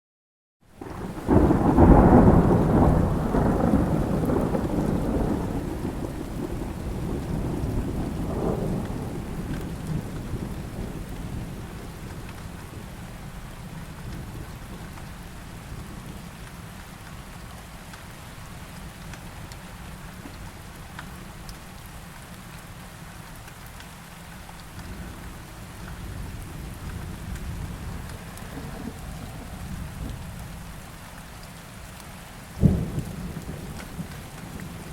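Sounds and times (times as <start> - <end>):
rain hissing on a surface: 0.6 - 34.9
thunder clap and rumble: 0.8 - 17.3, 24.6 - 31.5, 32.6 - 34.9.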